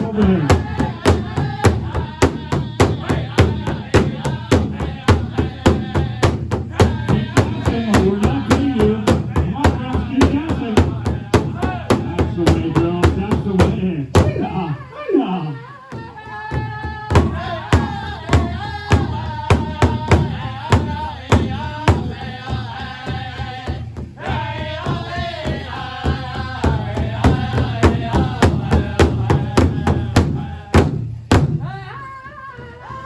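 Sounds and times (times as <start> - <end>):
hand drum beating: 0.0 - 14.7
group singing: 0.0 - 33.0.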